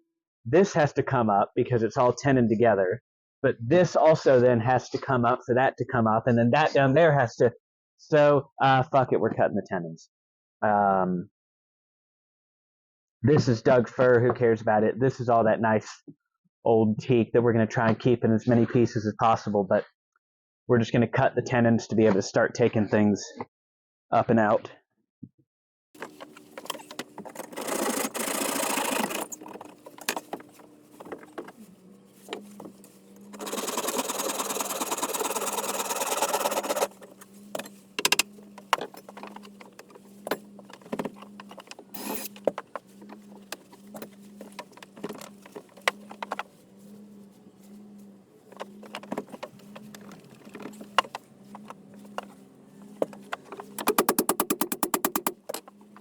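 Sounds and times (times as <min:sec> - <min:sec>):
power saw cutting wood: 0:26.0 - 0:46.5, 0:53.0 - 0:56.0
quick rattling: 0:26.0 - 0:46.5
knocks and clicks of wood: 0:36.5 - 0:46.5, 0:48.6 - 0:55.7.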